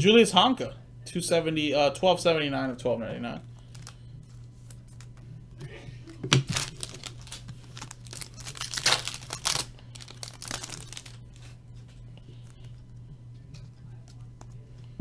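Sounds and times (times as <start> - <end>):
steady low hum: 0.0 - 15.0
foil wrapper crinkling and tearing: 3.6 - 4.0, 6.3 - 11.6.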